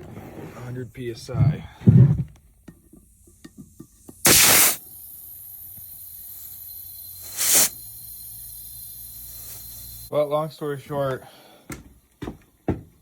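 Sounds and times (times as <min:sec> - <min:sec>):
compressed air hissing: 0:03.0 - 0:10.4.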